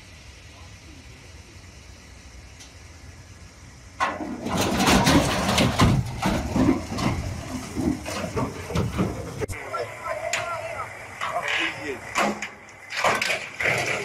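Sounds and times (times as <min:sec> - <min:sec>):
heavy vehicle engine running: 0:00.0 - 0:14.0
engine knocks and rattles: 0:02.5 - 0:09.6, 0:10.2 - 0:14.0.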